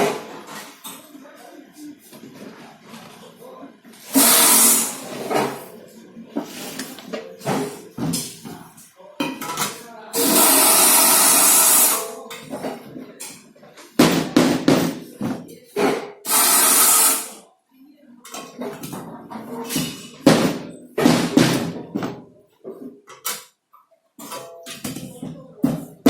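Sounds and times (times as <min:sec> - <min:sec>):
hissing air bursts: 0:04.1 - 0:05.1, 0:16.3 - 0:17.4.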